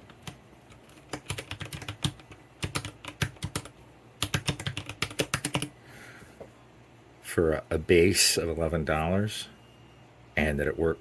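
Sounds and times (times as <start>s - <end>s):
mechanical keyboard typing: 0.1s - 5.7s.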